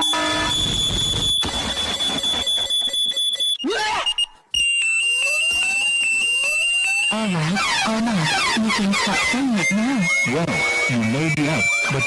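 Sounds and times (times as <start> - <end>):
high-pitched electronic alarm tone: 0.0 - 9.4.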